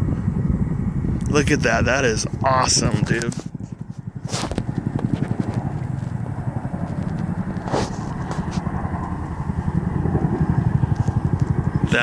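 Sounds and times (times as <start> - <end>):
helicopter rotor beating: 0.0 - 12.0.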